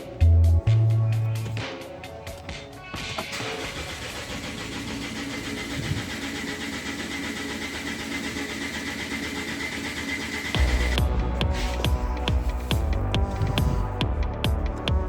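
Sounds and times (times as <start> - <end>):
diesel engine starting and idling: 3.3 - 14.3.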